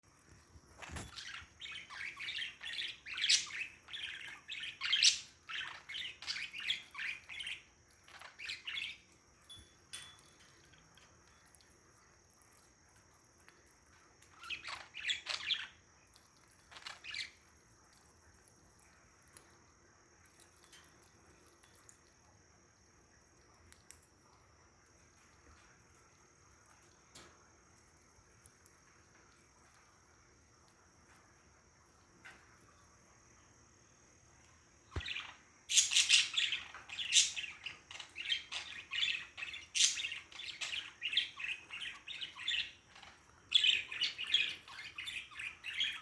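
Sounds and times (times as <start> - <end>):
faint high-pitched whine: 0.0 - 46.0
parrots chirping: 0.7 - 11.4, 14.3 - 15.9, 16.6 - 17.5, 34.9 - 46.0.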